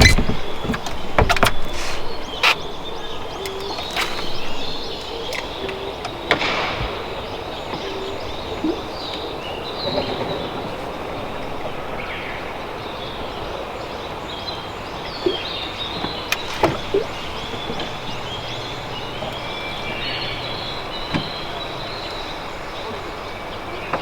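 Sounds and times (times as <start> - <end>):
sharp clicks: 0.0 - 7.0
outdoor background noise: 0.0 - 24.0.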